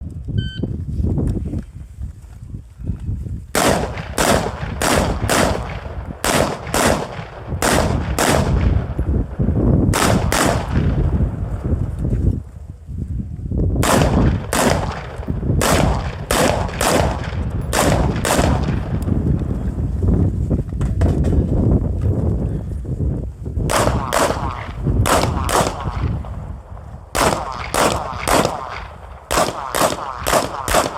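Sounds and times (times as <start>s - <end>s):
steady low rumble: 0.0s - 30.9s
gunshots in quick pairs: 3.6s - 9.0s, 9.9s - 11.2s, 13.8s - 19.0s, 23.7s - 26.5s, 27.1s - 30.9s.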